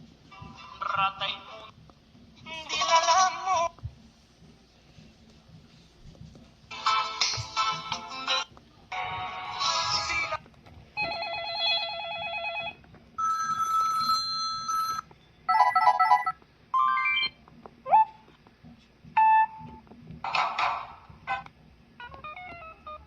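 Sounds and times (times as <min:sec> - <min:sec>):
electronic ringtones and alert tones: 0:13.2 - 0:17.4.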